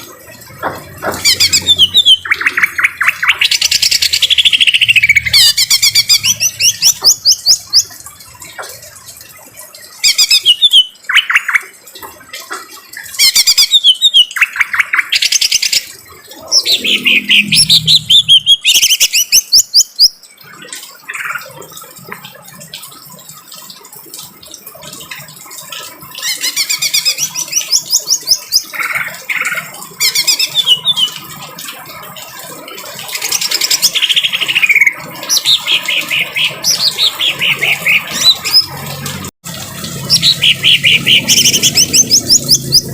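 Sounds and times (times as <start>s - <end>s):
bird singing trills and whistles: 1.1s - 8.0s, 10.0s - 11.7s, 13.2s - 20.2s, 26.3s - 31.2s.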